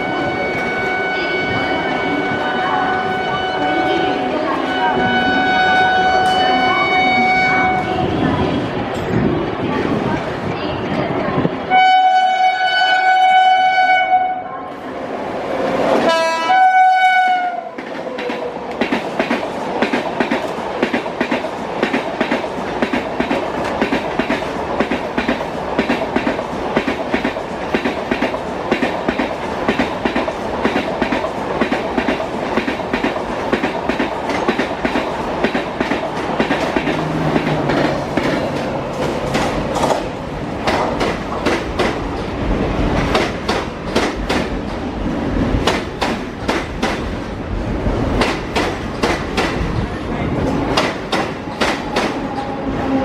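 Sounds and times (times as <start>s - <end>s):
train horn: 0.0s - 8.2s, 11.7s - 14.6s, 16.0s - 17.8s, 52.3s - 53.0s
train rumble: 0.0s - 53.0s
train wheels clickety-clack: 17.7s - 53.0s.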